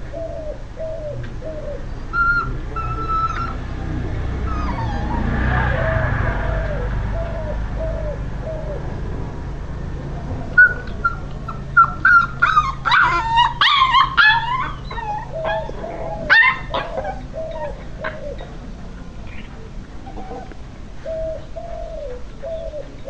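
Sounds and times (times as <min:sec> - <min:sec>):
steady low hum: 0:00.0 - 0:23.0
puppy whimpering and yelping: 0:02.1 - 0:03.7, 0:04.4 - 0:05.6, 0:10.6 - 0:18.5.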